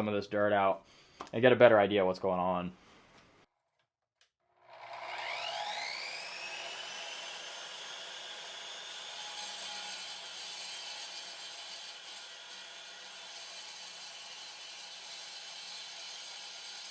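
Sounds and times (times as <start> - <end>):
electric concrete saw whine: 4.6 - 16.9.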